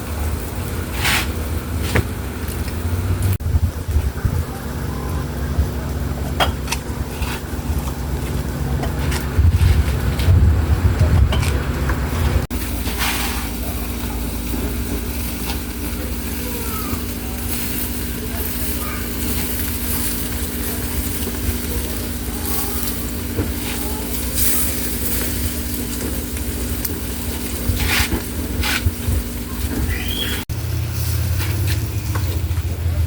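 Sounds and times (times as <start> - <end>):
food sizzling: 0.0 - 10.9, 11.7 - 33.0
low hum: 2.4 - 16.4.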